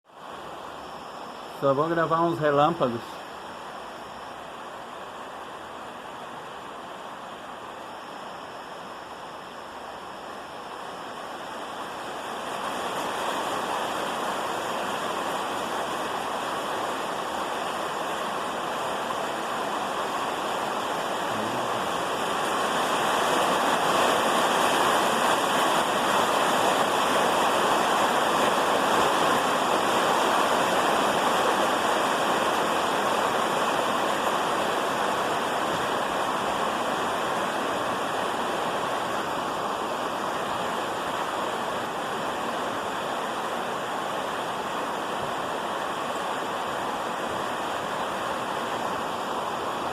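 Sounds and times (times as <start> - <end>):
heavy rain falling: 0.1 - 49.9.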